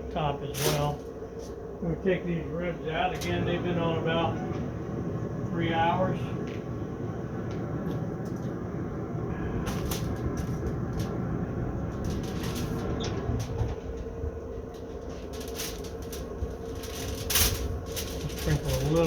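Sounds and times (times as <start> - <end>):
faint steady hum: 0.0 - 19.0
steady low rumble: 0.0 - 19.0
handling clicks and rustles: 0.5 - 1.6, 9.6 - 19.0.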